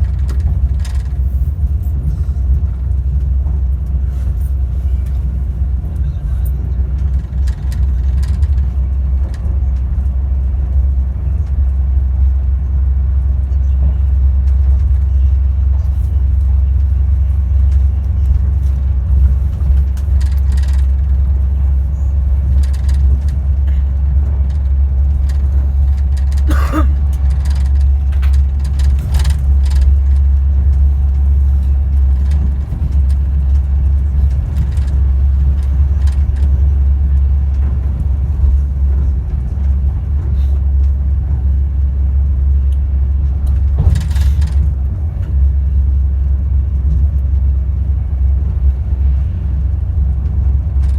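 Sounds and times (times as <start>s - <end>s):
train running gear rumble: 0.0s - 50.9s
clicks and rattles: 17.6s - 21.4s, 22.4s - 38.6s.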